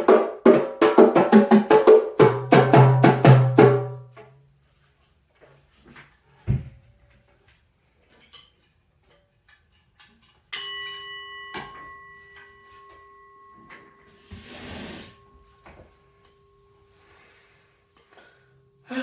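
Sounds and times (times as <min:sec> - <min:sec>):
metallic strike ringing like bell: 0:10.5 - 0:18.3.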